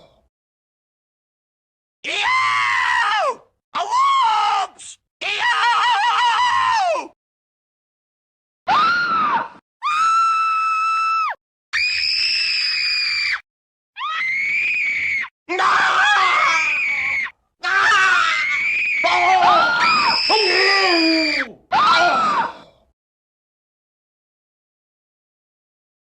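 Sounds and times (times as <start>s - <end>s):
woman screaming: 8.7s - 13.4s, 15.5s - 22.5s.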